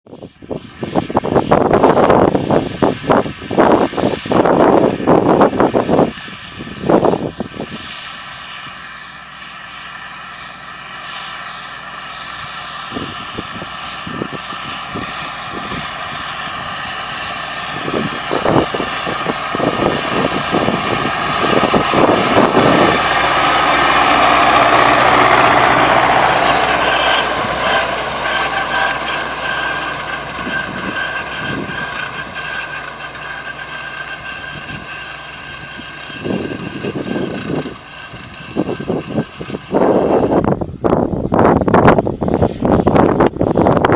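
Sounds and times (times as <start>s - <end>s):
tractor diesel engine running: 0.6s - 43.9s.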